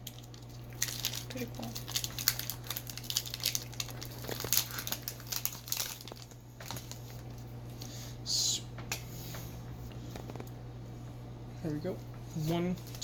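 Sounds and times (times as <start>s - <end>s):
foil wrapper crinkling: 0.0s - 7.9s, 12.4s - 13.0s
steady low hum: 0.0s - 13.0s.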